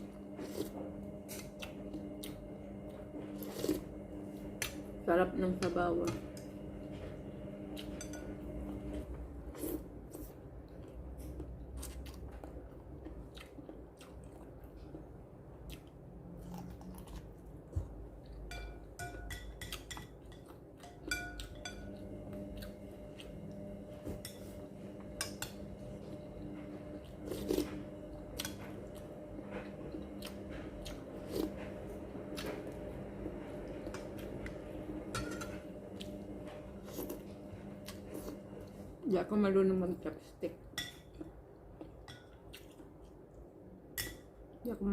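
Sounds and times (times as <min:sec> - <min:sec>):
steady low hum: 0:00.0 - 0:44.9
person chewing food: 0:09.5 - 0:18.5, 0:27.0 - 0:27.8, 0:41.1 - 0:43.5.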